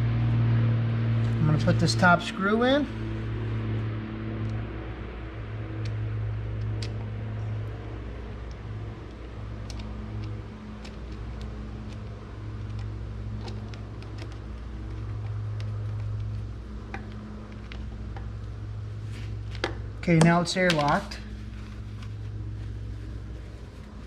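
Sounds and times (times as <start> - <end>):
low mechanical hum: 0.0 - 24.0
light clicks and taps of screw: 8.5 - 18.3.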